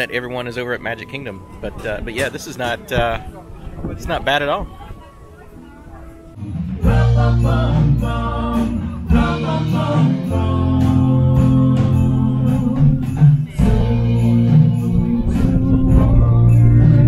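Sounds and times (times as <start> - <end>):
bass line: 6.4 - 17.0
person singing: 6.4 - 17.0
high percussion hits: 6.6 - 17.0.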